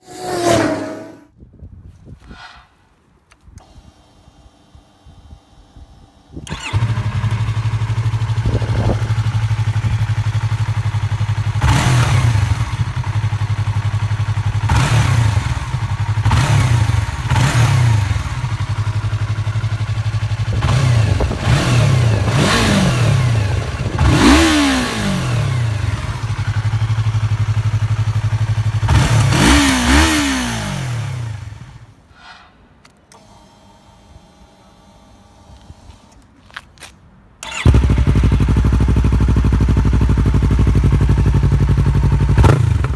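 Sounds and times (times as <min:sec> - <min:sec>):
motorcycle engine idling and revving: 0:03.6 - 0:32.1, 0:37.4 - 0:42.9.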